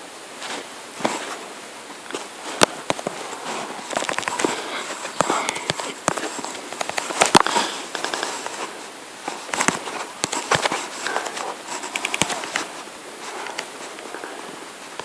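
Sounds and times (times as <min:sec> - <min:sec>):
steady hiss: 0:00.0 - 0:15.0
sharp clicks and crackling: 0:03.8 - 0:08.6, 0:09.3 - 0:12.7.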